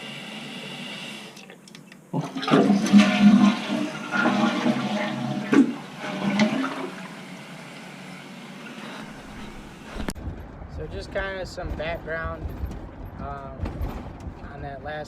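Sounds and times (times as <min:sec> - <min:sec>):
toilet flushing: 0:00.3 - 0:10.0.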